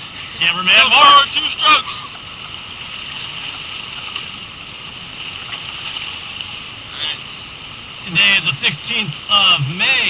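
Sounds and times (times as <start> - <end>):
whitewater rushing: 0.0 - 10.0.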